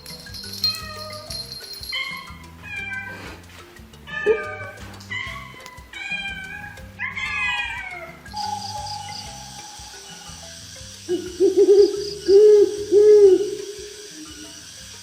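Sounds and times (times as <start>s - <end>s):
background music: 0.0s - 15.0s
cat meowing: 2.0s - 3.2s, 4.1s - 8.2s.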